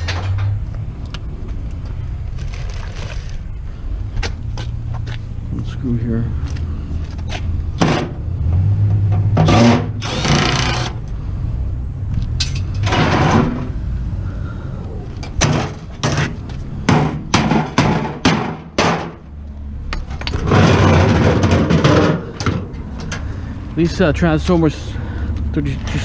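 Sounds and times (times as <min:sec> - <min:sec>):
sharp metallic knocks: 0:07.8 - 0:08.2, 0:15.4 - 0:19.2
power drill backing out screws: 0:09.5 - 0:11.0.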